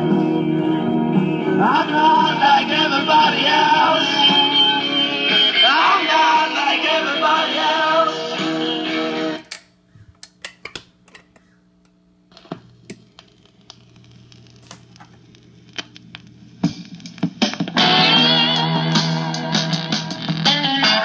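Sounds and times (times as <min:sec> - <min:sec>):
rock song on record player: 0:00.0 - 0:09.8, 0:12.3 - 0:21.0
low mechanical hum: 0:09.4 - 0:17.5.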